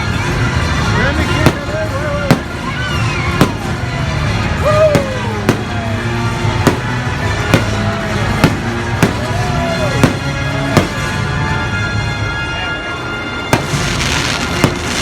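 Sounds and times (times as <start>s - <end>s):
loud music: 0.0s - 15.0s
fireworks bangs: 1.2s - 11.3s, 13.5s - 15.0s.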